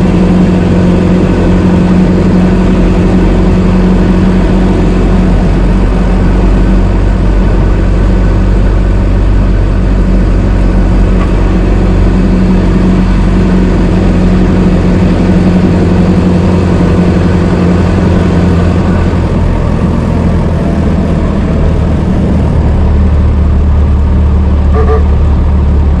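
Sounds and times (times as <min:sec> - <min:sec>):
car engine running: 0:00.0 - 0:26.0
short high-pitched tone: 0:24.7 - 0:25.3.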